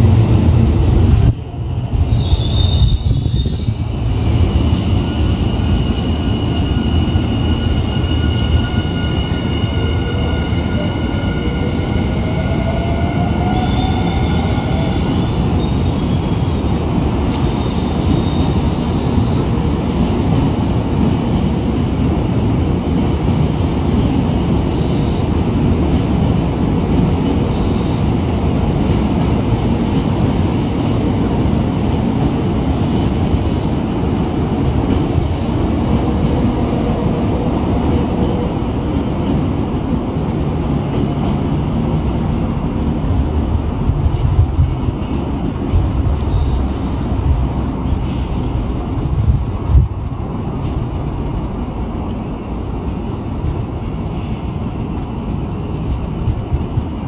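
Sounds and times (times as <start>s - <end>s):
train wheels rumbling on rails: 0.0s - 57.0s
high squealing tones: 2.0s - 4.2s, 4.9s - 15.9s.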